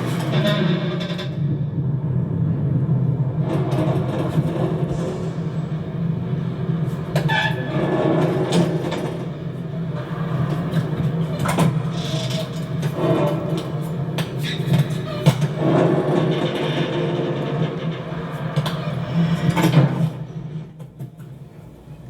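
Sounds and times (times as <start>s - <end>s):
machinery squeal: 7.2s - 8.2s.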